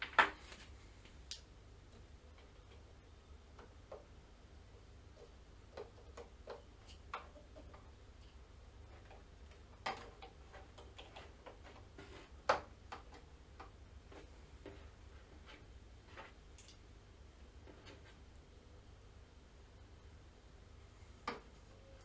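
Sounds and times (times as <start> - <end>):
small parts clicking and tapping: 5.7 - 11.9.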